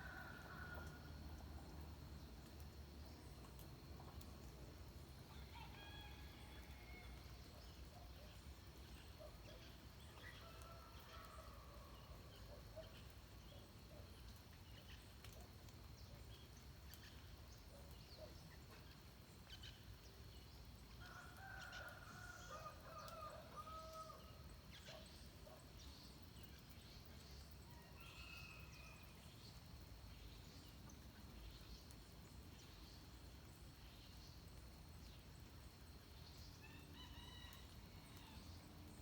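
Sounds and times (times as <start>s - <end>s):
faint rooster crowing: 0.0s - 1.2s, 5.3s - 7.4s, 10.2s - 12.3s, 21.0s - 24.4s, 27.7s - 29.1s, 36.6s - 38.7s.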